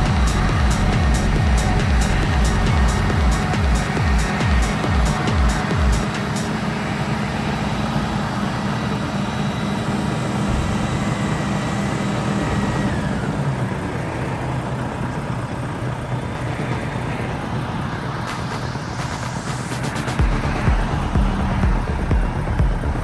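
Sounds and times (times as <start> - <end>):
diesel engine running under load: 0.0 - 23.0.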